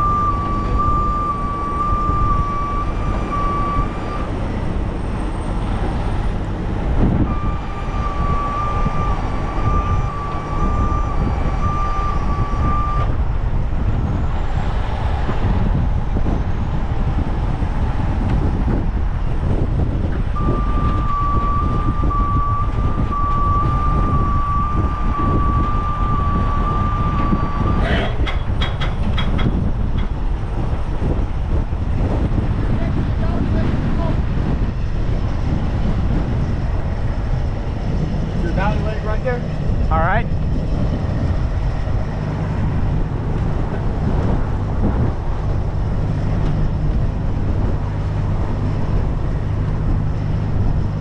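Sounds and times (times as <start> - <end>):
truck warning alarm tone: 0.0 - 13.2, 20.4 - 28.4
diesel truck engine rumble: 0.0 - 51.0
wind buffeting microphone: 0.0 - 51.0.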